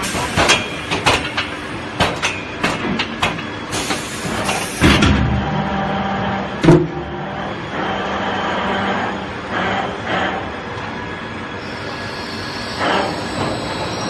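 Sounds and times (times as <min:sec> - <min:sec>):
machinery humming: 0:00.0 - 0:14.0
hiss of air: 0:03.7 - 0:04.9.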